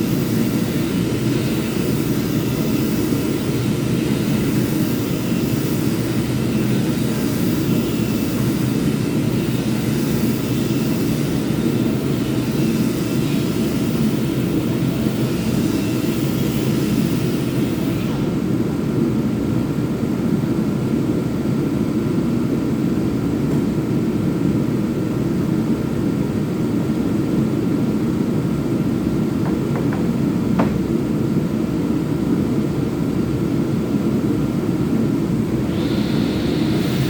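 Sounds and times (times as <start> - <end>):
power sander running: 35.5 - 37.0.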